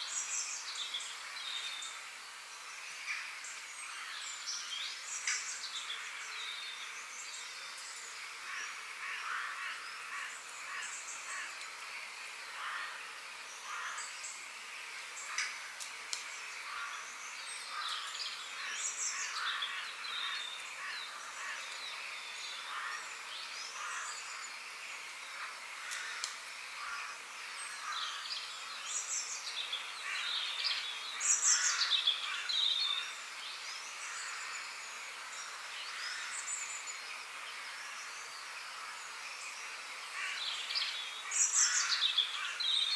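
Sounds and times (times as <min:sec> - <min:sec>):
steady high hiss: 0:00.0 - 0:42.9
birds chirping and calling: 0:15.1 - 0:24.6, 0:25.4 - 0:34.7, 0:40.1 - 0:42.9.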